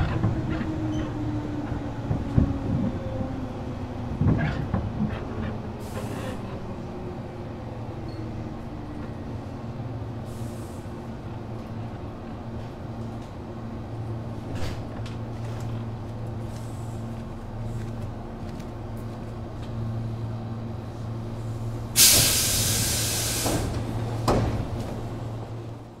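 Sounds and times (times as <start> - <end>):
compressed air hiss: 22.0 - 23.8.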